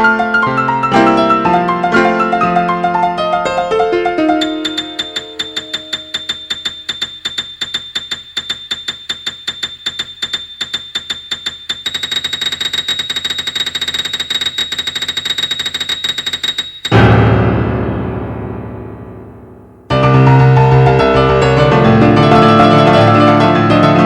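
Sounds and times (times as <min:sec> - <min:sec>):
high electronic beeping: 0:04.4 - 0:17.3.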